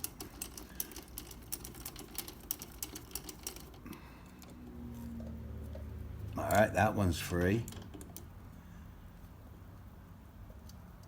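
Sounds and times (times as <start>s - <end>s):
ratchet clicking: 0.0s - 4.7s.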